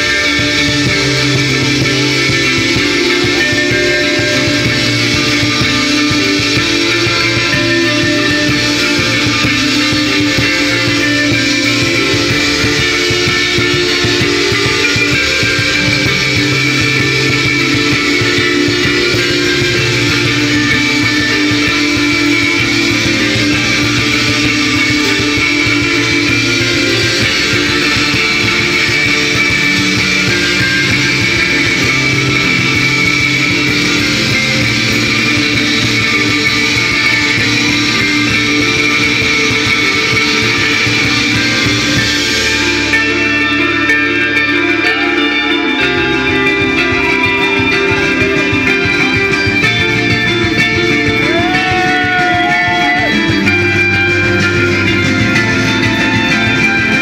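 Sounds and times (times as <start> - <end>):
bass: 0.0 - 57.0
drums: 0.0 - 57.0
electric guitars: 0.0 - 57.0.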